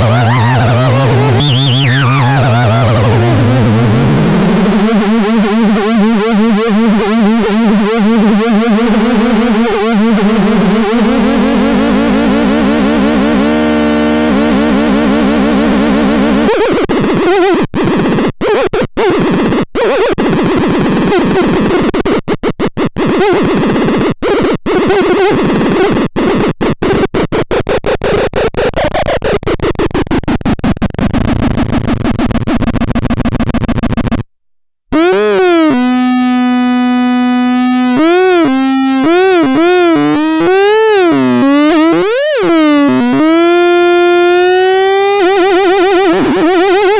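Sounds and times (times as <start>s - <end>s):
sliding pitched electronic tone: 0.0s - 16.8s, 34.9s - 46.9s
harsh stuttering electronic buzz: 0.0s - 34.2s, 34.9s - 46.9s.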